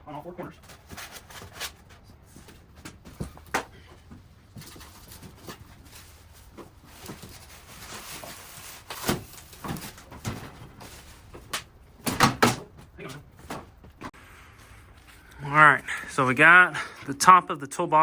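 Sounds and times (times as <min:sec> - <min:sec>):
cardboard rustling and scraping: 0:00.6 - 0:03.5, 0:04.1 - 0:11.7.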